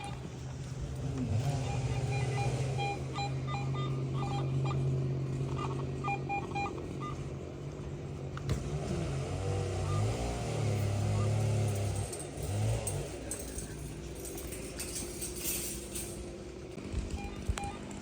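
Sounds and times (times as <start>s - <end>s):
metal detector beeps: 1.5s - 4.9s, 5.5s - 7.2s, 17.1s - 18.0s.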